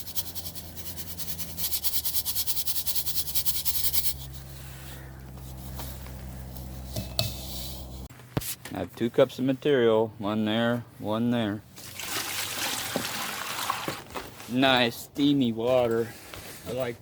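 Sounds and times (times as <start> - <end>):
low steady hum: 0.0 - 8.4.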